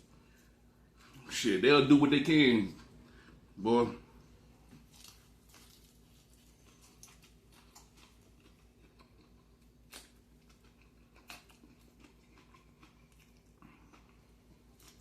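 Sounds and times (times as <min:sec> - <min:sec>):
faint chewing and mouth clicks: 0:04.7 - 0:15.0.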